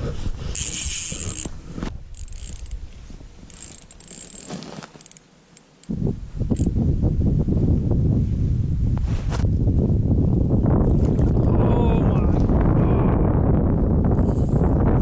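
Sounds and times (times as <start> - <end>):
wind rumble on microphone: 0.0 - 4.0, 5.9 - 15.0
fishing reel whirring and ratcheting: 0.5 - 1.5, 2.1 - 2.8, 3.5 - 5.9, 6.5 - 6.7.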